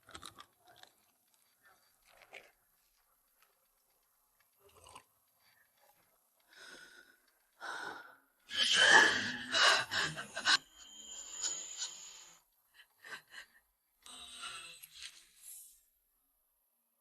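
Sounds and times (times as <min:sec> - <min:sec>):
person gasping: 0:07.6 - 0:10.6
person vocalising strained: 0:08.5 - 0:10.6.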